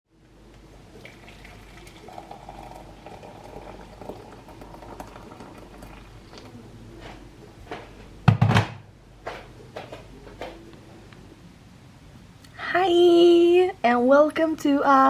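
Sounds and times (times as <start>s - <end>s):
water bubbling: 0.9s - 6.6s.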